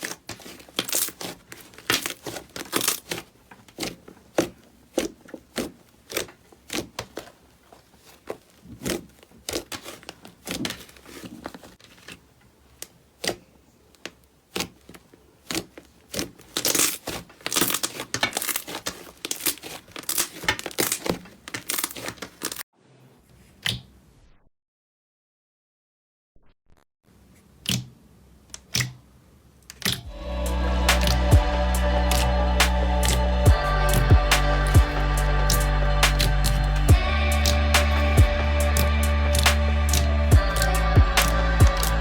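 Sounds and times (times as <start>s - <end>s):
slime squishing with sticky crackles: 0.0s - 22.6s.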